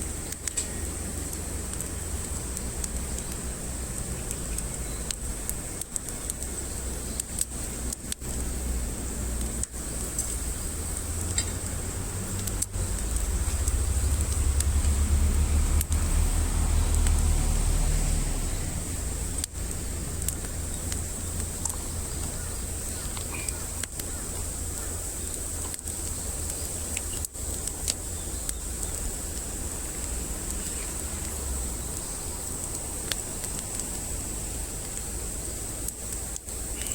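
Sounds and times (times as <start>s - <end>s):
campfire crackles: 0.0s - 36.9s
high hiss: 0.0s - 36.9s
low rumble: 10.4s - 22.2s.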